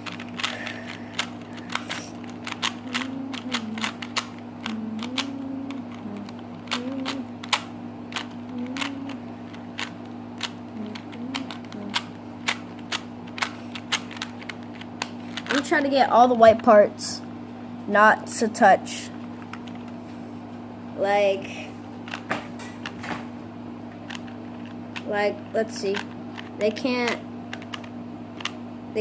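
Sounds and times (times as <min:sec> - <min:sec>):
plastic puzzle cube clicking: 0:00.0 - 0:15.8, 0:25.8 - 0:28.6
steady low hum: 0:00.0 - 0:29.0.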